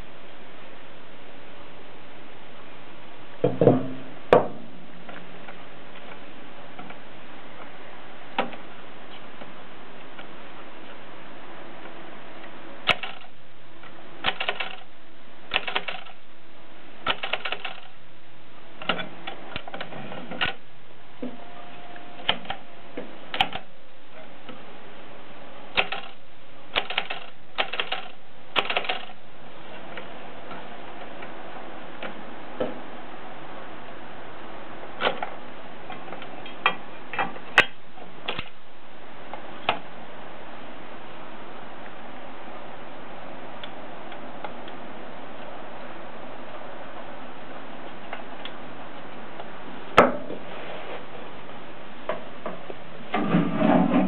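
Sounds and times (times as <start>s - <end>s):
typewriter clicks and clacks: 12.8s - 13.3s, 14.2s - 14.9s, 15.5s - 16.2s, 17.0s - 17.9s, 23.3s - 23.7s, 25.8s - 29.2s.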